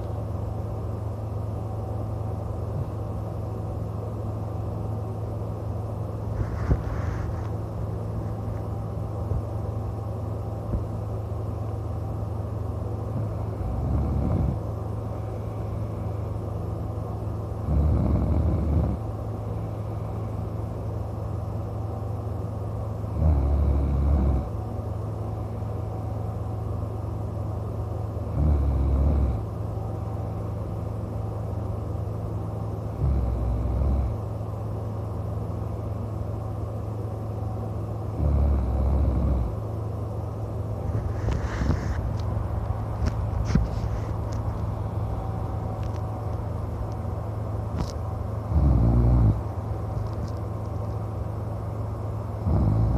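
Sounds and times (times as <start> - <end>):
steady low hum: 0.0 - 52.9
man snoring: 13.1 - 14.6, 17.6 - 19.1, 23.1 - 24.6, 28.3 - 29.5, 32.9 - 34.3, 38.1 - 39.6, 48.5 - 49.4, 52.4 - 52.9.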